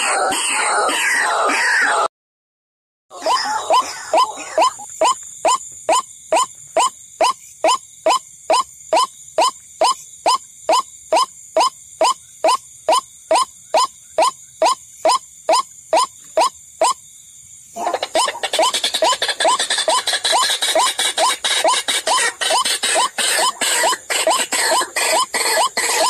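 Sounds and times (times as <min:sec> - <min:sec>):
raucous bird calls: 0:03.1 - 0:17.0, 0:17.7 - 0:26.0.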